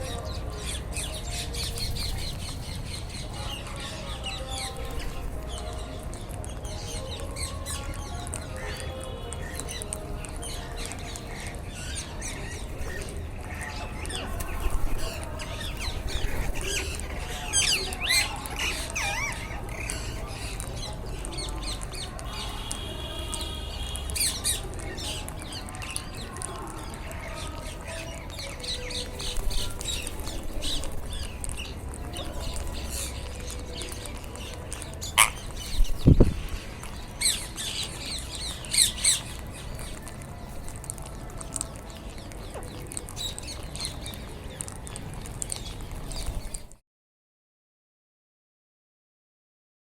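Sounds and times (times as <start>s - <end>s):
parakeets squawking: 14.4s - 20.6s, 28.8s - 40.0s.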